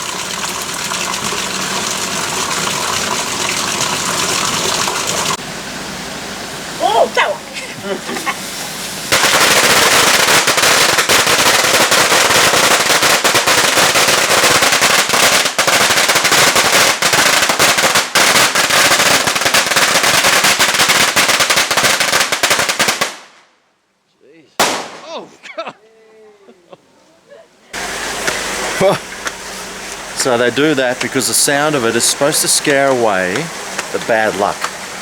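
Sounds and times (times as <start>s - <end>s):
firecrackers crackling: 8.1s - 23.5s, 24.6s - 25.4s, 27.8s - 35.0s.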